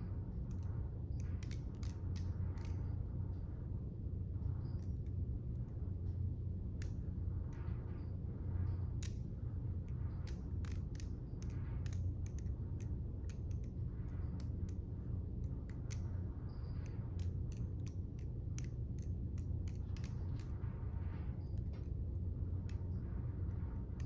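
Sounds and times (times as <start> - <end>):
steady low hum: 0.0 - 24.0
butterfly knife handles clicking: 0.5 - 3.0, 9.0 - 9.3, 9.9 - 20.6.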